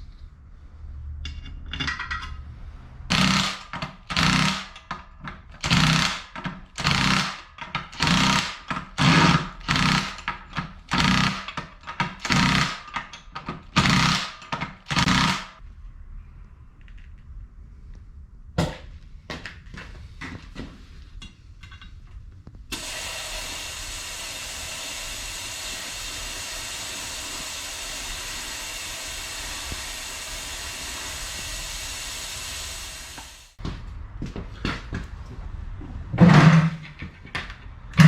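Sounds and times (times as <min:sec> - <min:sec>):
power tool bursts: 0:03.1 - 0:05.0, 0:05.6 - 0:15.6, 0:22.7 - 0:33.6.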